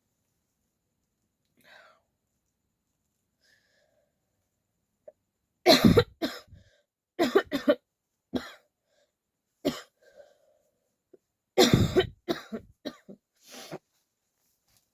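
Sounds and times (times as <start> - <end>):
person coughing: 5.7 - 6.6, 7.2 - 7.8, 11.6 - 13.2.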